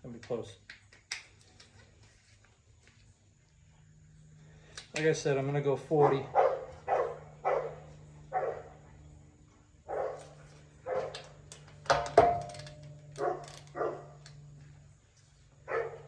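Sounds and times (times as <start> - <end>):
steady low hum: 0.0 - 16.0
dogs barking: 5.9 - 9.1, 9.8 - 11.4, 13.2 - 14.2, 15.6 - 16.0.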